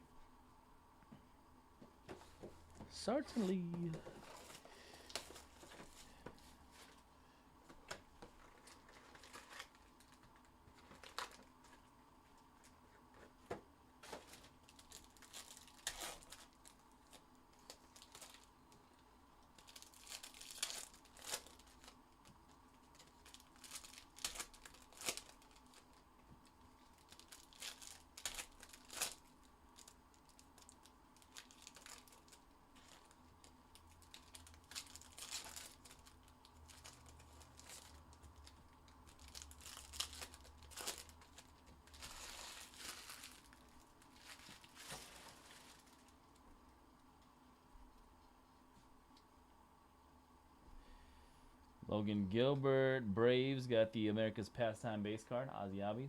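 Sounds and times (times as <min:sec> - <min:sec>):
plastic wrapping torn and crinkled: 0:07.9 - 0:11.9, 0:14.0 - 0:18.8, 0:19.4 - 0:46.4.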